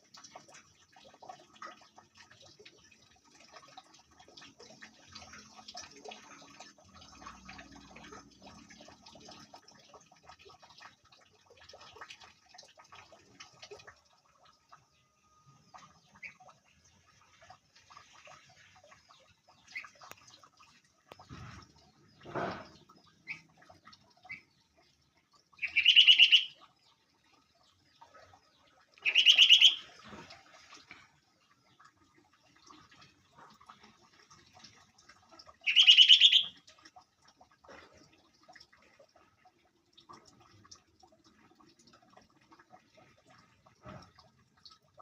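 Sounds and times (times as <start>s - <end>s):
faint bird ticks and chirps: 14.4s - 30.2s, 35.5s - 36.6s
bulbul call: 25.6s - 26.6s, 29.0s - 29.9s, 35.6s - 36.5s.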